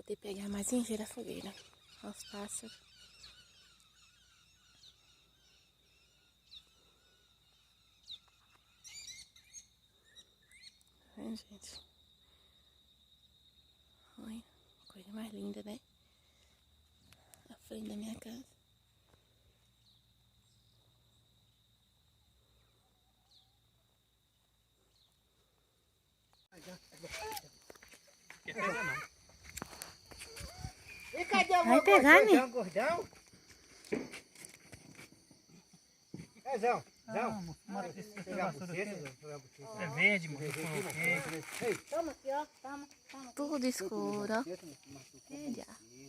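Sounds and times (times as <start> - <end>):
faint bird twittering: 1.2 - 11.9, 30.1 - 32.1
sharp high bird chirps: 1.4 - 10.8, 30.2 - 32.4
steady thin high tone: 28.5 - 33.0.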